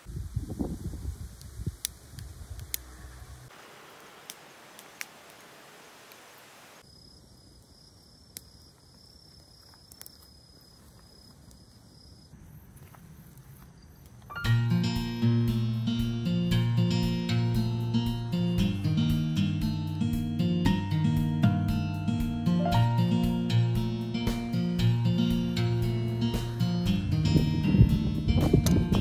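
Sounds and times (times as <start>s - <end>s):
outdoor ambience: 0.0s - 20.6s.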